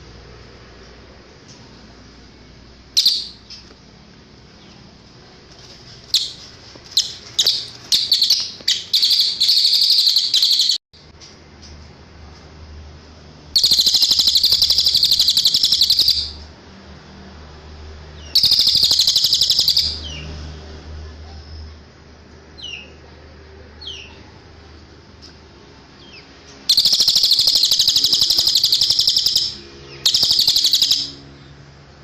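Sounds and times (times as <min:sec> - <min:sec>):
songbird singing and trilling: 0:03.0 - 0:03.7, 0:06.1 - 0:10.8, 0:13.6 - 0:16.4, 0:18.2 - 0:20.3, 0:26.0 - 0:31.3.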